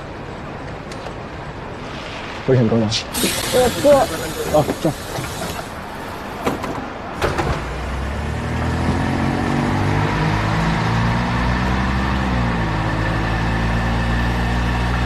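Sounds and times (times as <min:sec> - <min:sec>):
bus engine running: 0:03.0 - 0:15.0.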